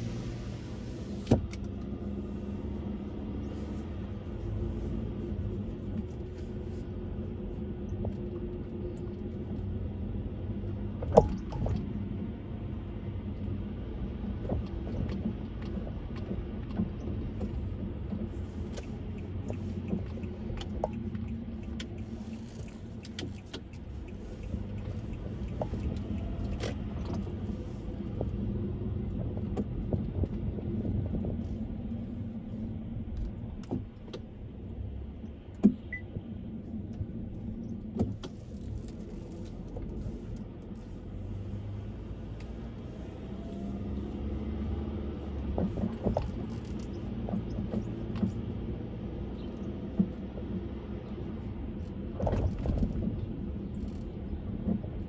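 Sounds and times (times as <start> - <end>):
car road rumble: 0.0 - 55.0
small rattles and clicks: 14.5 - 27.6.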